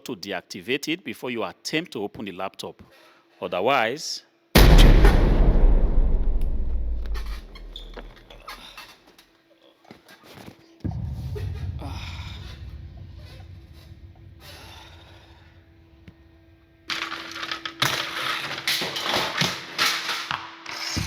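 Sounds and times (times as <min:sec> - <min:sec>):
low rumble: 0:04.6 - 0:08.4, 0:10.9 - 0:15.9.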